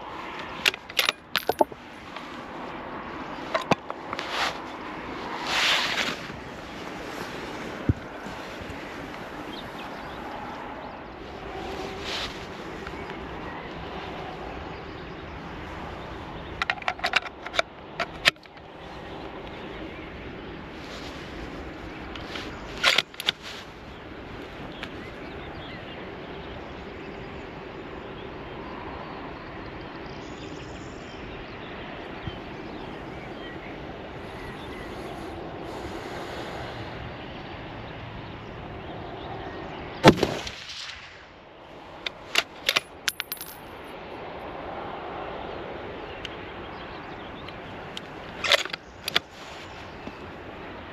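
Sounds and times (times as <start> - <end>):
sharp clicks and knocks: 16.6 - 18.6
rain hiss: 35.0 - 36.9.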